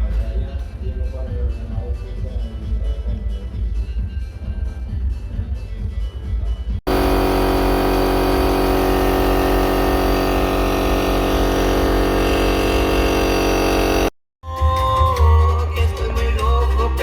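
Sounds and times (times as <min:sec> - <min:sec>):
steady electrical hum: 0:06.9 - 0:14.1.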